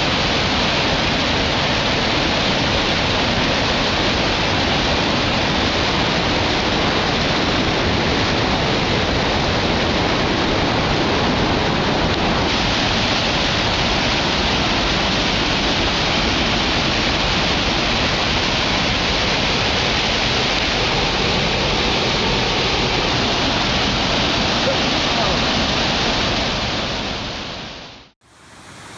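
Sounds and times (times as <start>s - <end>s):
waterfall rushing: 0.0s - 28.9s.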